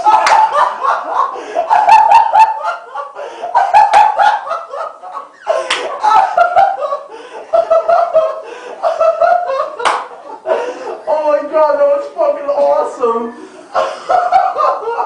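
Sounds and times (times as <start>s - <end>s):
people laughing hard: 0.0s - 11.5s, 12.6s - 15.0s
sharp slaps: 5.6s - 5.9s, 9.8s - 10.1s.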